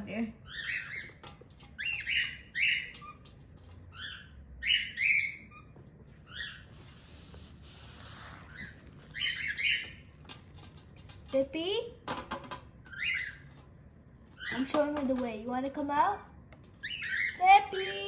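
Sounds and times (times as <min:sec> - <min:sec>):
cockatiel chirping: 0:00.4 - 0:03.3, 0:03.9 - 0:10.1, 0:12.9 - 0:13.4, 0:16.8 - 0:18.0.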